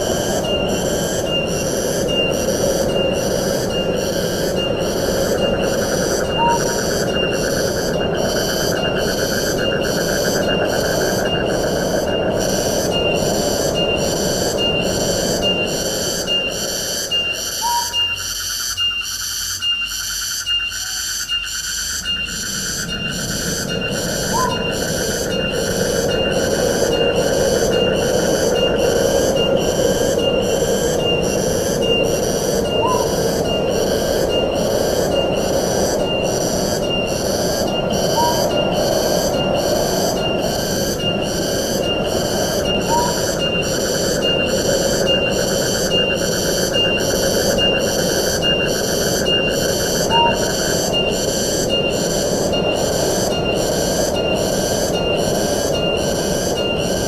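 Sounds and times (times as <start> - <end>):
pulsing insect chorus: 0.0 - 57.0
wind rushing through trees: 0.0 - 57.0
bird rising whistle: 17.1 - 21.4, 23.7 - 24.8, 32.7 - 33.1, 38.1 - 38.6, 42.8 - 43.3, 50.1 - 50.4.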